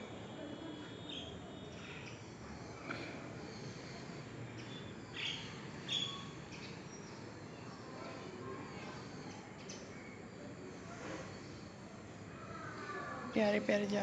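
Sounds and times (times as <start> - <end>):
faint bird twittering: 0.0 - 13.7
small birds chirping: 0.2 - 14.0.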